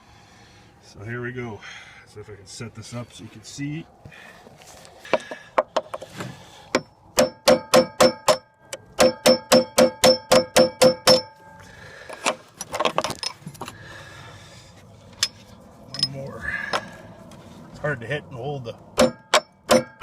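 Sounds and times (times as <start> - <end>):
hammer striking a chisel: 6.7 - 11.4, 19.0 - 20.0.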